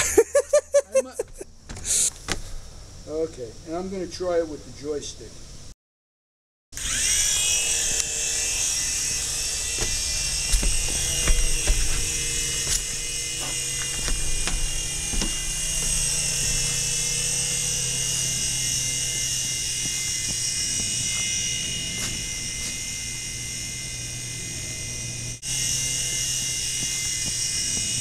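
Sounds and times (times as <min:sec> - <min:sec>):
toy helicopter rotor whine: 0:06.8 - 0:28.0.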